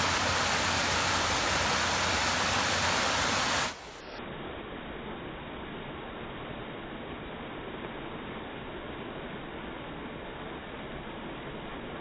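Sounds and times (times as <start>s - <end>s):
waterfall rushing: 0.0s - 4.0s.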